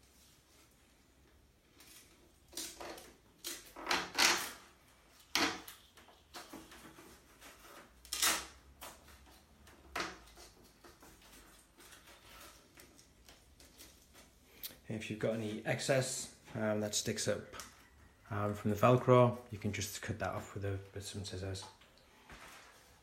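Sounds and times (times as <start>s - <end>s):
velcro straps ripping: 7.6s - 8.9s.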